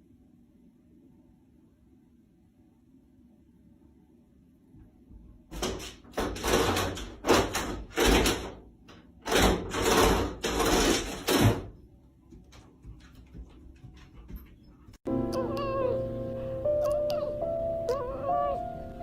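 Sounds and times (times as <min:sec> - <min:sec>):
door rattling and scraping: 0:05.5 - 0:11.8.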